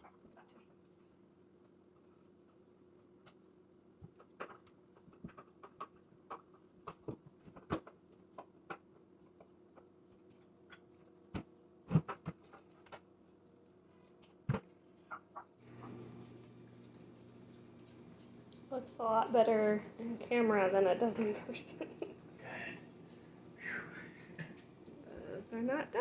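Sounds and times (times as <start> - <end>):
faint steady hum: 15.6 - 26.0.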